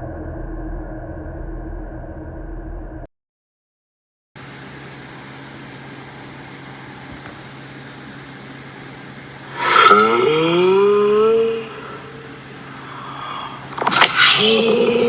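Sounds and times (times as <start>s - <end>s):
steady hum with hiss: 4.4s - 15.0s
voice sliding upward in pitch: 9.5s - 12.3s.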